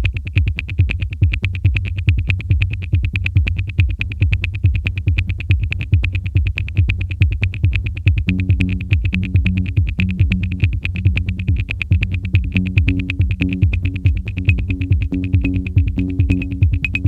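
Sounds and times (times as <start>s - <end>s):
sustained bass line: 0.0s - 17.0s
electronic synthesizer music: 8.3s - 17.0s.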